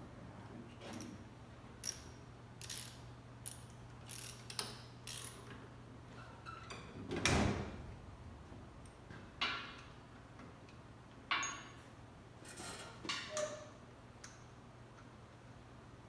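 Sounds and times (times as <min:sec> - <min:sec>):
metal tools clicking and clinking: 0:01.8 - 0:05.5.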